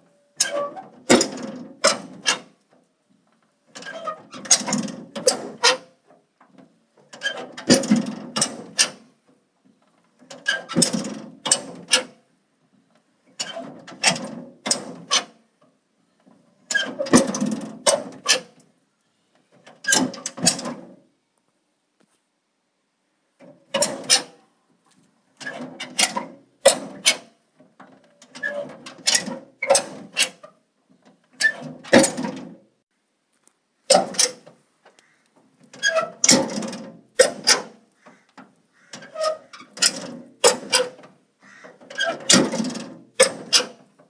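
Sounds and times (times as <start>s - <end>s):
metal door scraping rattle: 0.4s - 2.6s, 3.7s - 6.0s, 6.6s - 9.2s, 10.0s - 12.2s, 13.3s - 15.4s, 16.3s - 18.7s, 19.5s - 21.0s, 23.4s - 24.5s, 25.4s - 32.6s, 33.9s - 34.6s, 35.6s - 37.9s, 38.9s - 44.0s.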